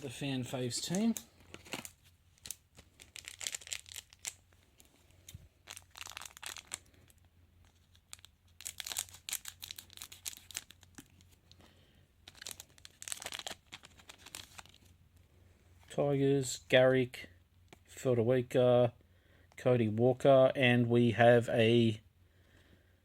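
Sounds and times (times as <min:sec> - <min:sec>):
wrappers crinkling: 0:00.0 - 0:11.6, 0:12.2 - 0:14.9
foil packets tearing open: 0:00.7 - 0:04.4, 0:05.6 - 0:06.9, 0:08.0 - 0:11.2, 0:12.3 - 0:14.8.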